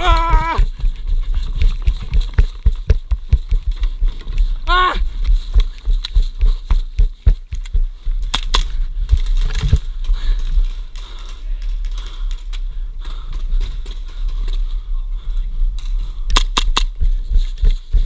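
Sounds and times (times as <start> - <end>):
low thumps of movement: 0.0 - 11.0
airsoft pistol clicks and knocks: 16.3 - 17.0
sharp cracks: 16.3 - 17.0.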